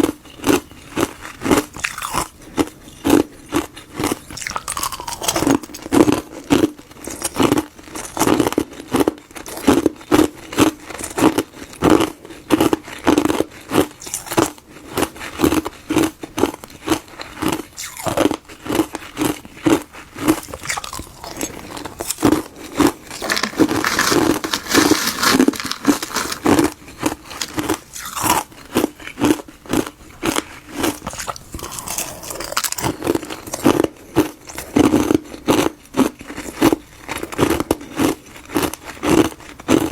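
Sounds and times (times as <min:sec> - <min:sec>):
ice being smashed crunching: 0:23.1 - 0:28.4.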